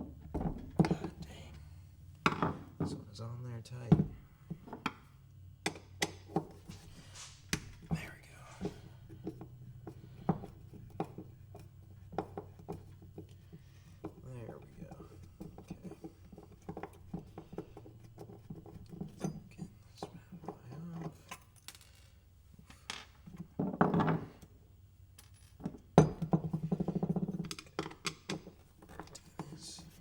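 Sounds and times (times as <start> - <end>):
metal tools clinking and tapping: 18.6 - 22.1.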